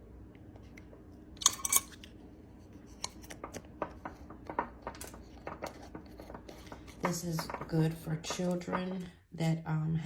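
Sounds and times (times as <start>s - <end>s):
kitchen utensils clicking and tapping: 1.4s - 2.1s, 3.0s - 9.1s.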